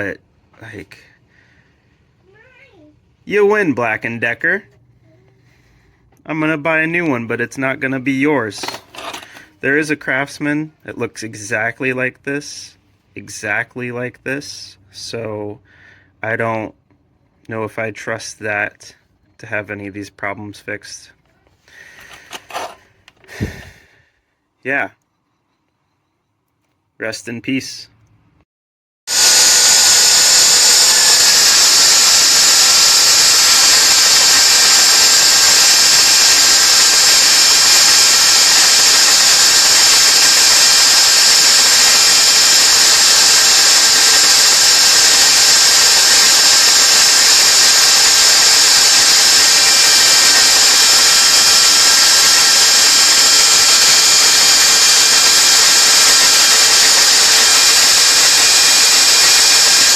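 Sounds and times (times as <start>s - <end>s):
power tool motor running: 8.6s - 9.5s, 29.1s - 59.9s.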